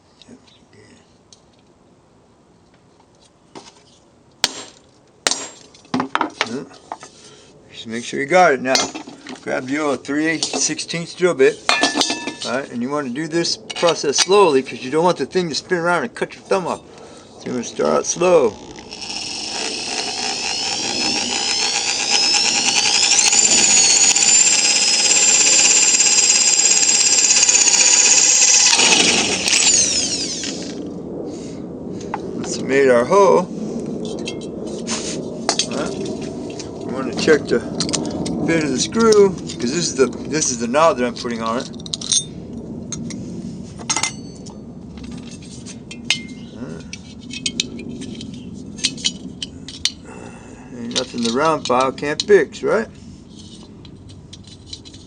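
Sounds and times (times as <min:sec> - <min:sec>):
electric drill boring metal: 0:18.4 - 0:30.8.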